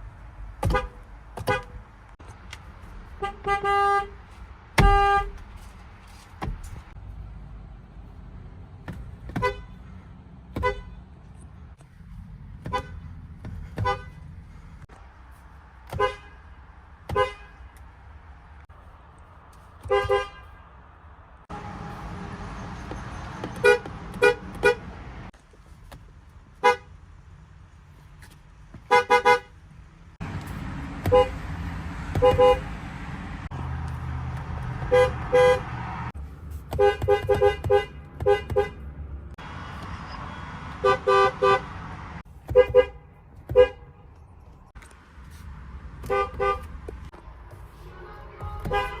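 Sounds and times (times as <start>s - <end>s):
engine or street noise: 0.0s - 49.0s
vehicle horn honks: 3.2s - 4.2s, 4.8s - 5.4s, 19.8s - 20.6s, 32.2s - 32.6s, 34.9s - 35.7s, 40.3s - 41.8s, 42.5s - 44.0s, 47.8s - 49.0s.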